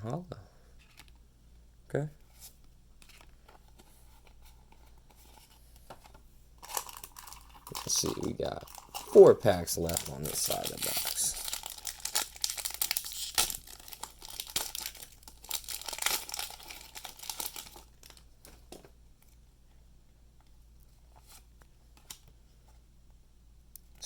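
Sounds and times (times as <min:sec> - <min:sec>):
foil wrapper crinkling and tearing: 0:06.6 - 0:18.3.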